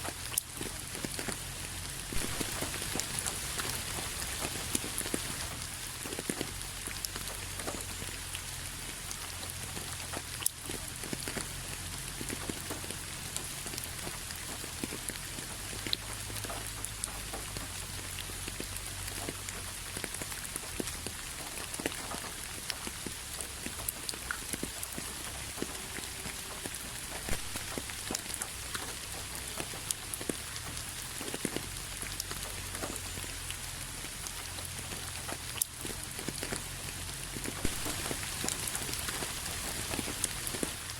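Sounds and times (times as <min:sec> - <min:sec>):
rain pattering on a hard surface: 0:00.0 - 0:40.9.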